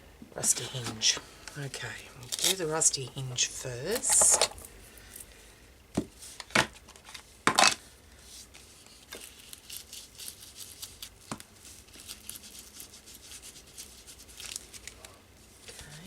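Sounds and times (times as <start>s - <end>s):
scratchy rubbing on paper: 11.6s - 14.5s.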